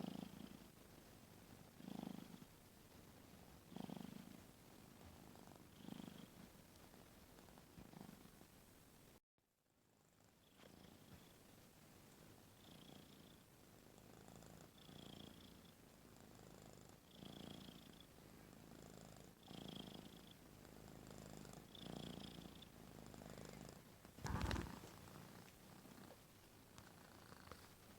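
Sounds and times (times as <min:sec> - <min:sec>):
cat snoring with whistle: 0:24.2 - 0:25.4.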